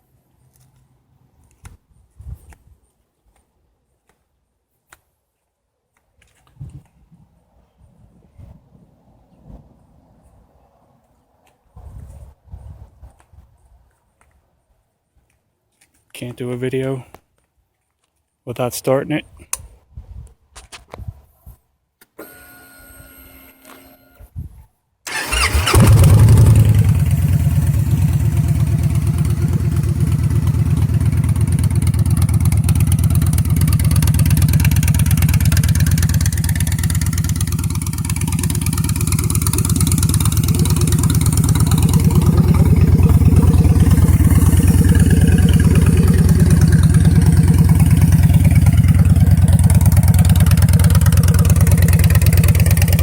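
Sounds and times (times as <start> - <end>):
motorcycle engine starting and idling: 25.1 - 53.0.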